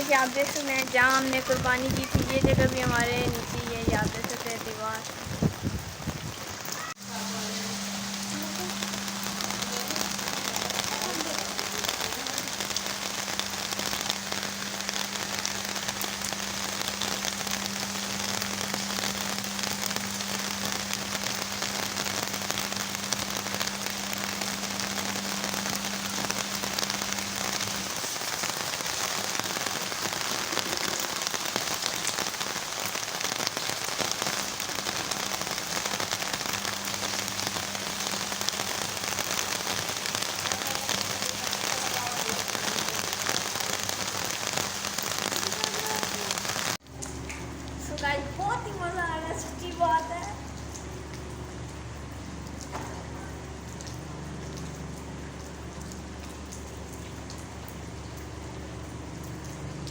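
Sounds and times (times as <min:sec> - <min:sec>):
heavy rain pouring: 0:00.0 - 0:59.9.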